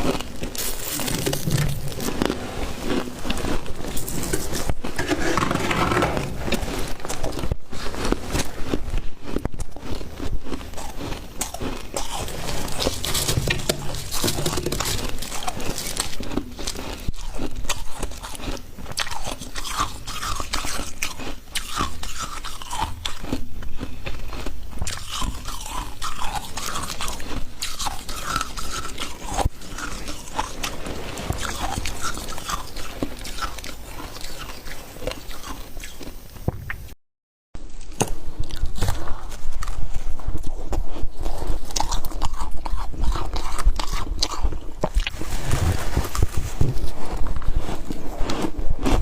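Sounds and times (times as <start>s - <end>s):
frost being chewed crunching: 0.0s - 36.8s, 37.7s - 49.0s.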